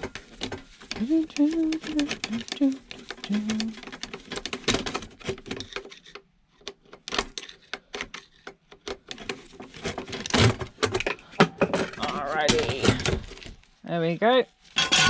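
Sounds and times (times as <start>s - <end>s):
hand tools clattering on metal parts: 10.2s - 13.2s, 14.8s - 15.0s.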